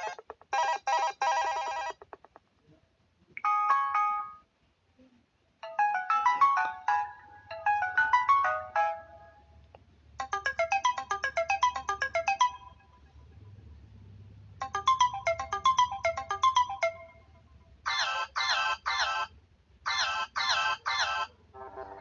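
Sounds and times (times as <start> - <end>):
bell-like phone ringtone melody: 3.4 - 4.5, 5.6 - 9.6, 10.2 - 13.5, 14.6 - 19.3
different phone tone: 10.2 - 13.4, 14.6 - 17.4.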